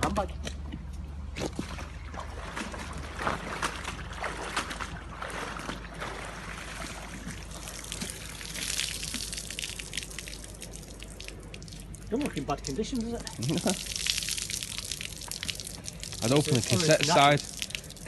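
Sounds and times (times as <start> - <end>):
water trickling and dripping: 5.3 - 18.0.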